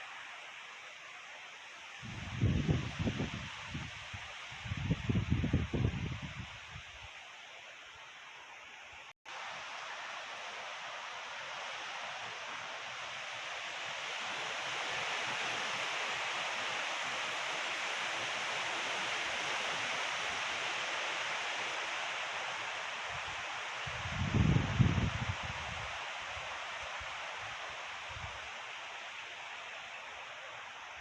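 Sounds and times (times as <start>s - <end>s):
wind rushing through trees: 0.0s - 31.0s
wind buffeting microphone: 2.0s - 6.9s, 23.9s - 25.9s.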